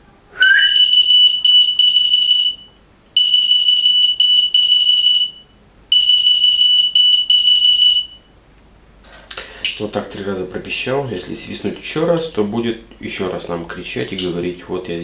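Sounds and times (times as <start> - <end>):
person whistling: 0.3 - 2.0
key finder electronic beeps: 0.7 - 5.4.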